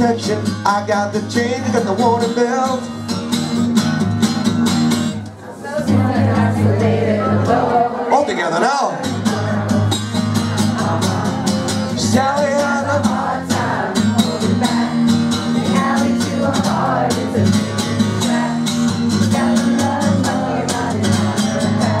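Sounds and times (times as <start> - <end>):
live guitar: 0.0 - 22.0
crowd singing along: 5.3 - 22.0.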